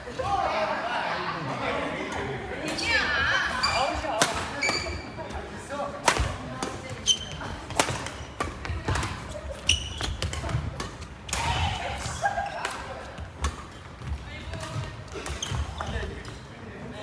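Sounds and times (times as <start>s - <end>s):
rackets hitting shuttlecock: 2.1s - 16.4s
shoes squeaking on floor: 3.2s - 5.5s, 6.9s - 16.4s.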